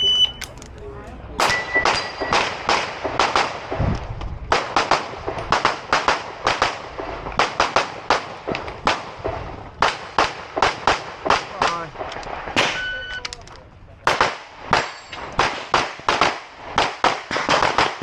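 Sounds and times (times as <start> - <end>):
handgun firing rapid shots: 1.4 - 3.8, 4.5 - 9.1, 14.1 - 18.0.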